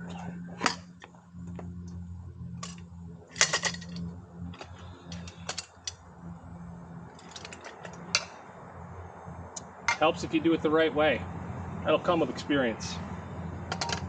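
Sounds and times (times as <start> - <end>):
steady low hum: 0.0 - 14.0
metal parts clicking and clanking: 2.5 - 6.0, 7.1 - 8.4, 13.7 - 14.0.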